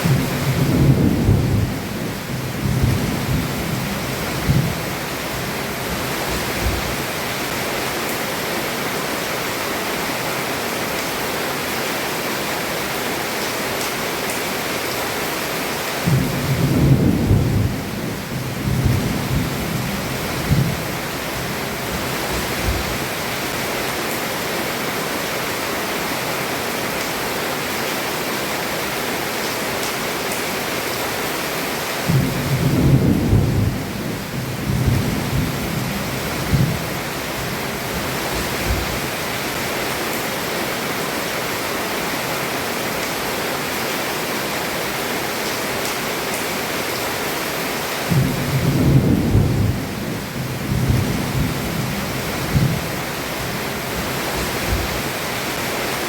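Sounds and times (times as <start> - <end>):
thunder rumbling: 0.0 - 4.8, 16.0 - 23.0, 32.1 - 39.2, 48.1 - 55.2
heavy rain on a roof: 0.0 - 56.0.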